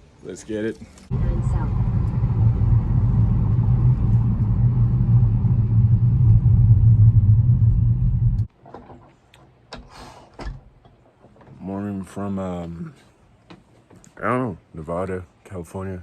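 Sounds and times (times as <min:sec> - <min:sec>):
vehicle rumbling in motion: 0:01.1 - 0:08.5.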